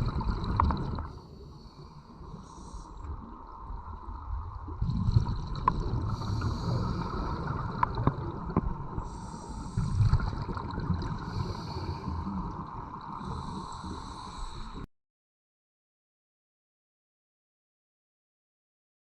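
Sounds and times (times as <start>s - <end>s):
diver breathing through regulator: 1.1s - 3.3s, 6.0s - 7.7s, 9.0s - 10.5s, 11.1s - 12.6s, 13.2s - 14.8s.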